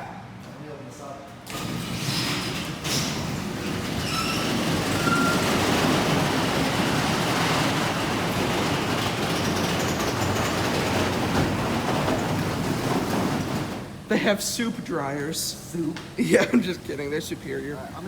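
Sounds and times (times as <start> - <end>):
overhead door rolling open: 1.4 - 14.1.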